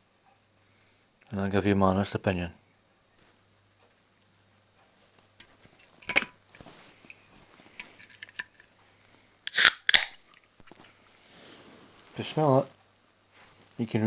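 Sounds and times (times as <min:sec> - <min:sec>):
can being handled clicks: 0:07.8 - 0:08.7, 0:09.5 - 0:10.2.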